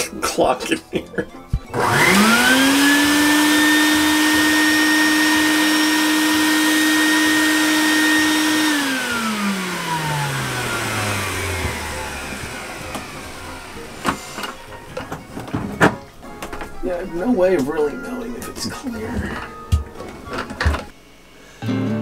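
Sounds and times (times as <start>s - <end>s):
small electric motor whine: 1.7s - 14.7s.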